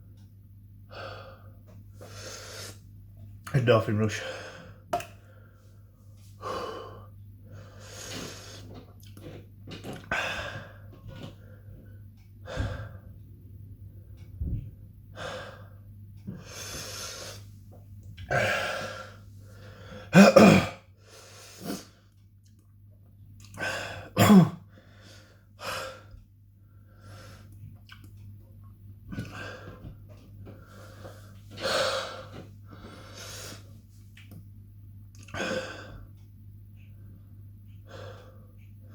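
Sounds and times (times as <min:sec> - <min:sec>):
man breathing hard: 0:06.4 - 0:08.8, 0:10.1 - 0:13.2, 0:15.1 - 0:17.5, 0:18.3 - 0:20.2, 0:23.6 - 0:27.6, 0:29.2 - 0:33.7, 0:37.8 - 0:38.9.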